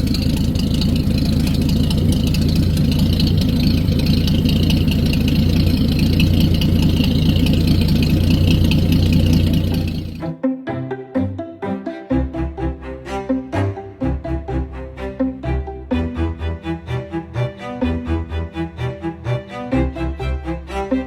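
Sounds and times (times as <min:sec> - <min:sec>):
marine engine running: 0:00.0 - 0:10.2
music: 0:10.2 - 0:21.0.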